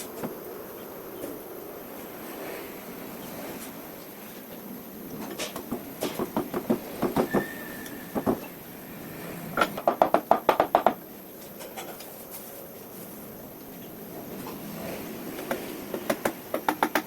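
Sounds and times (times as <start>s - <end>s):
wood planer clicks and knocks: 15.4s - 17.0s.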